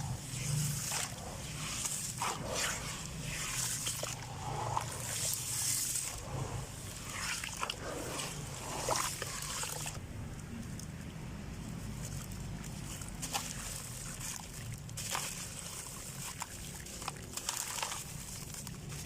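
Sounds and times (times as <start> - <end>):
steady low hum: 0.0 - 19.0
dry sand-cement crumbling: 14.9 - 19.0.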